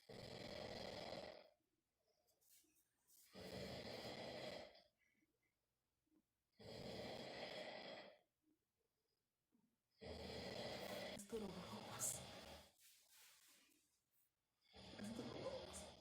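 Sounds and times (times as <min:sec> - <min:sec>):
man snoring: 0:00.0 - 0:01.5, 0:03.4 - 0:04.8, 0:06.6 - 0:08.2, 0:10.0 - 0:11.2.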